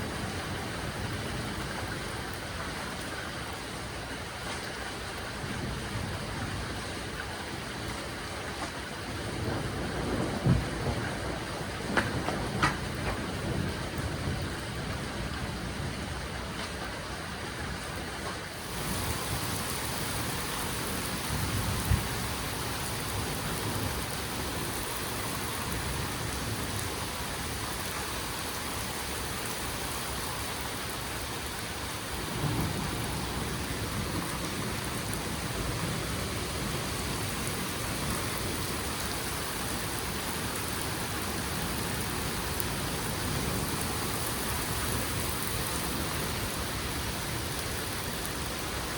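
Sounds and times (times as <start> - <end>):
steady rain: 0.0 - 48.9
thunder rumbling: 9.1 - 16.6, 18.6 - 48.9.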